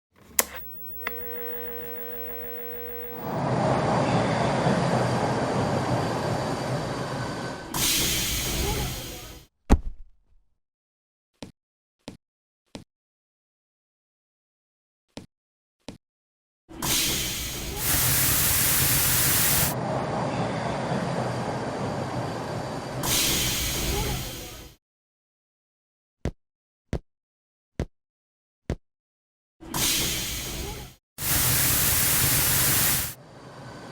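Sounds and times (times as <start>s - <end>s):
faint steady hum: 0.3s - 7.7s
loud hiss: 1.0s - 9.4s, 16.8s - 24.7s, 31.2s - 33.9s
subway train rumbling: 3.2s - 9.4s, 16.9s - 24.7s, 31.2s - 33.9s
sharp hiss: 16.9s - 19.8s, 21.9s - 24.4s, 31.2s - 33.2s.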